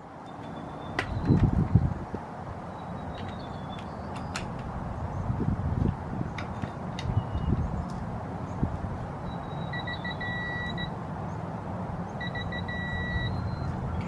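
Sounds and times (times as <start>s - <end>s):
electronic beeps and long tone: 9.2s - 10.9s, 12.2s - 13.8s.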